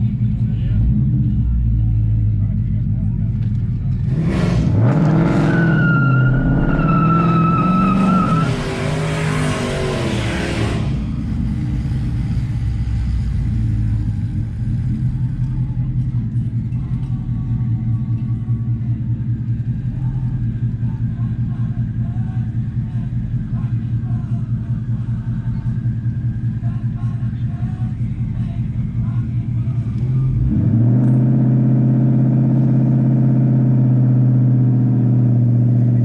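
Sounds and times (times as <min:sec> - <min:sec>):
car engine idling: 0:00.0 - 0:36.0
car engine revving: 0:00.0 - 0:36.0
high whine: 0:04.8 - 0:30.8
tyre squeal: 0:05.3 - 0:09.4.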